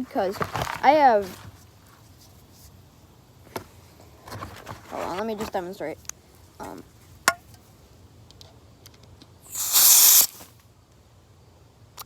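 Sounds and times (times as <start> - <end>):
pressurised gas hissing: 9.4 - 10.6.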